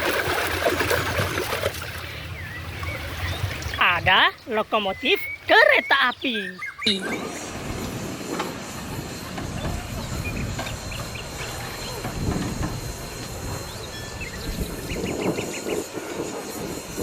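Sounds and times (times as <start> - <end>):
water sloshing and splashing: 0.0 - 5.7
birds chirping: 1.9 - 17.0.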